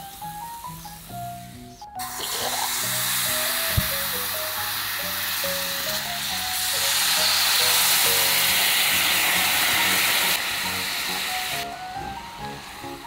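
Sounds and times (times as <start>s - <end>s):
hot oil sizzling: 0.0s - 13.0s
light background music: 0.0s - 13.0s.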